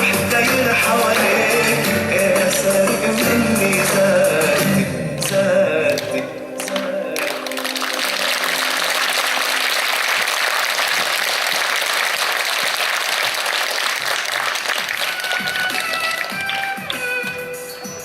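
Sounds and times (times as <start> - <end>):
audience applauding: 5.9 - 17.3.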